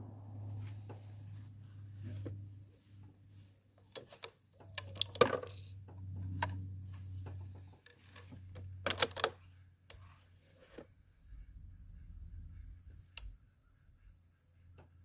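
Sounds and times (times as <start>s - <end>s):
low steady hum: 0.0s - 15.0s
metallic clicks of rifle handling: 8.0s - 9.4s.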